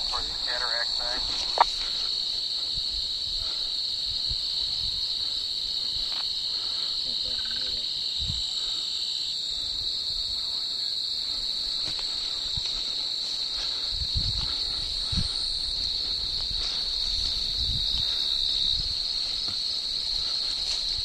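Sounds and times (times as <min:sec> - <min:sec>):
soft footsteps: 0:00.0 - 0:02.3
crickets chirping: 0:00.0 - 0:21.0.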